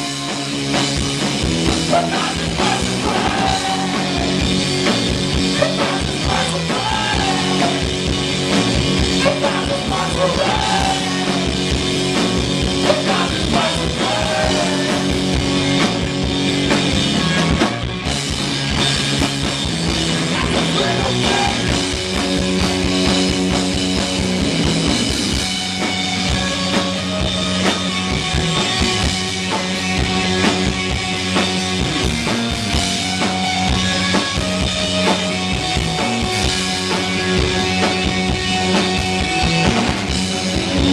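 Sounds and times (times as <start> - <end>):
drum kit: 0.0 - 40.9
rock band playing live: 0.0 - 40.9.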